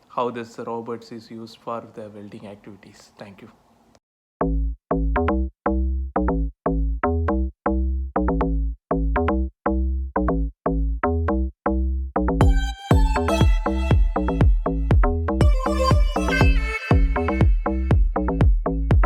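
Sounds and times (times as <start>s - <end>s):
electronic music with deep bass: 4.4s - 19.0s.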